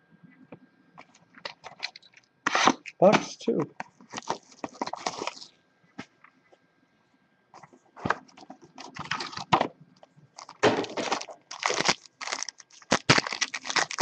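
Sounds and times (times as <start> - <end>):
packaging crinkling and tearing: 4.1 - 5.5, 8.1 - 9.6, 10.4 - 14.0.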